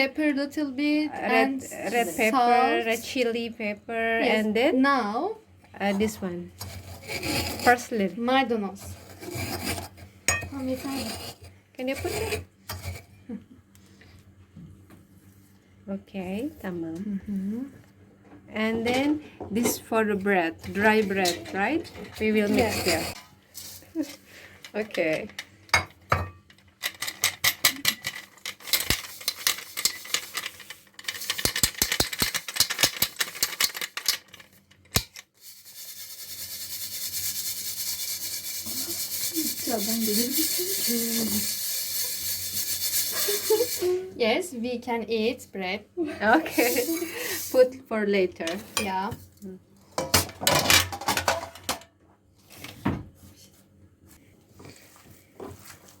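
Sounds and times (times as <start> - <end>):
kitchen things knocking and clattering: 10.3 - 10.7, 20.6 - 35.2, 49.9 - 52.0.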